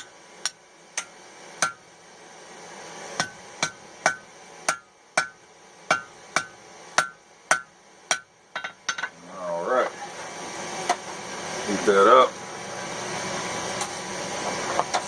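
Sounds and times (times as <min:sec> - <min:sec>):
hammer striking steel on anvil: 0:00.0 - 0:01.9, 0:03.2 - 0:09.2.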